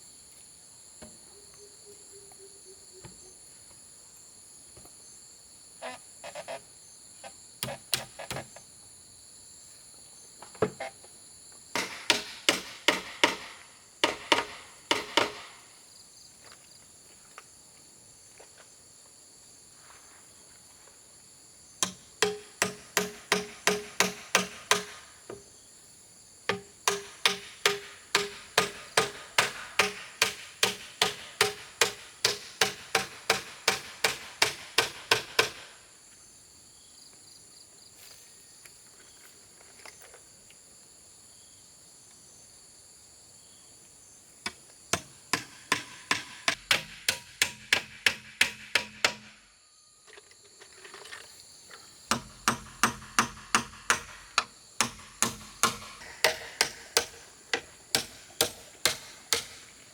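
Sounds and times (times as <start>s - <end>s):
crickets and insects droning: 0.0s - 59.9s
tool striking bamboo: 7.6s - 8.5s, 11.8s - 15.6s, 21.8s - 25.5s, 26.5s - 35.8s, 44.4s - 49.4s, 52.1s - 59.8s.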